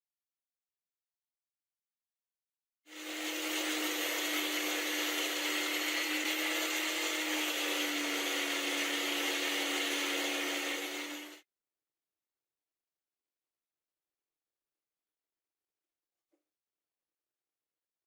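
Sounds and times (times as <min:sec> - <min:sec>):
power tool motor humming: 0:02.9 - 0:11.4.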